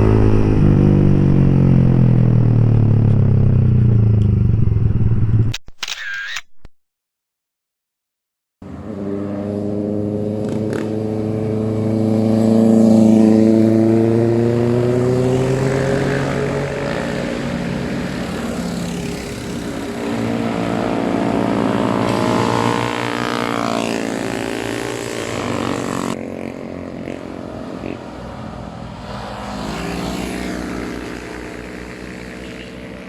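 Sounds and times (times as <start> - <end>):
motorcycle engines revving: 0.0 - 5.2, 8.6 - 33.0.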